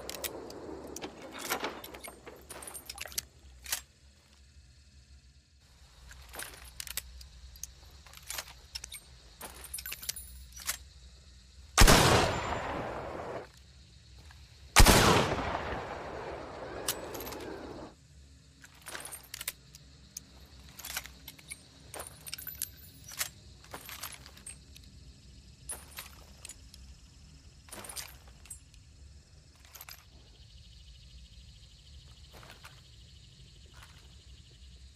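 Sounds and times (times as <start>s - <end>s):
metallic clicks and rattles: 6.1s - 10.9s
rifle shots echoing: 11.8s - 13.5s, 14.8s - 17.9s.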